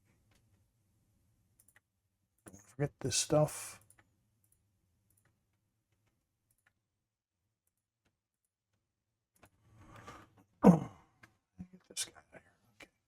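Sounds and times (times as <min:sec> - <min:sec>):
faint scattered clicks: 0:01.6 - 0:01.8.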